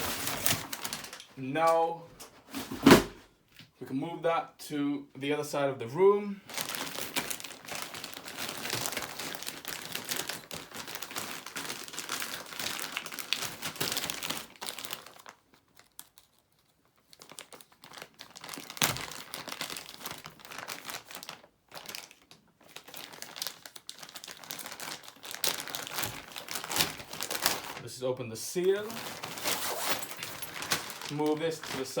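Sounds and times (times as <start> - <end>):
plastic packaging crinkling: 0.0 - 1.4, 6.4 - 32.0.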